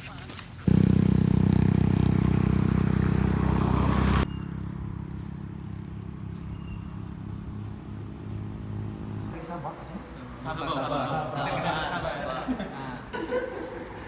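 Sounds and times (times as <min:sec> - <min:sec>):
motor hum with low throb: 0:00.7 - 0:09.4.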